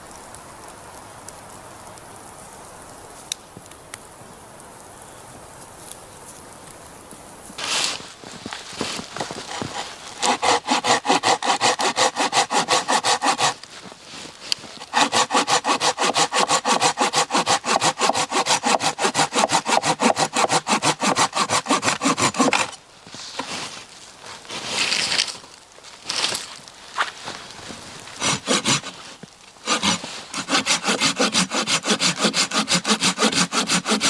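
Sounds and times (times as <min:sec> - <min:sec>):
hand saw cutting wood: 0:09.2 - 0:13.7, 0:14.8 - 0:22.8, 0:28.2 - 0:34.0.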